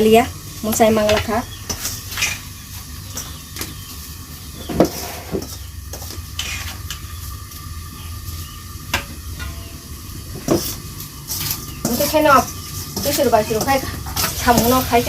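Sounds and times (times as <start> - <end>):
low steady sizzle: 0.0 - 15.0
utensil scraping a cooking pot: 4.5 - 7.4, 8.0 - 15.0.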